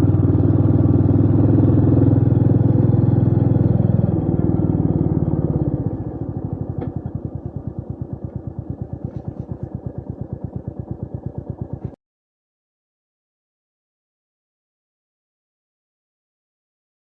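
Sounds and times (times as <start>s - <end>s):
motorcycle engine running and idling: 0.0s - 12.0s.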